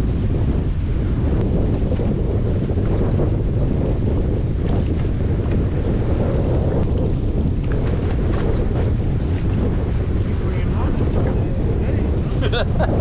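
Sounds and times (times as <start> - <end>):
choppy water against boat: 0.0 - 13.0
wind buffeting microphone: 0.0 - 13.0.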